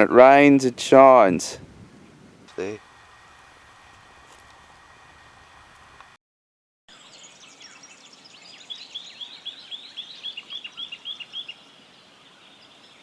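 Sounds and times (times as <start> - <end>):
bird chirping downward sweeps: 6.9 - 13.0
faint bird calls: 7.0 - 13.0.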